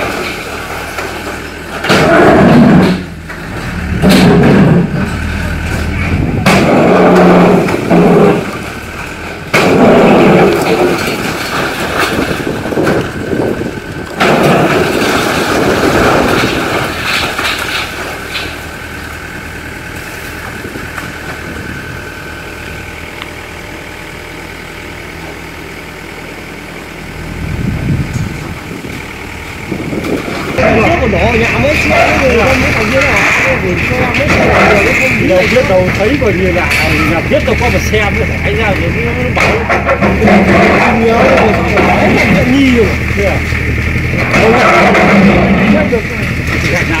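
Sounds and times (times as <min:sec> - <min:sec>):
concrete and brick crashing: 0:00.0 - 0:18.8, 0:30.0 - 0:47.0
excavator diesel engine running: 0:00.0 - 0:47.0.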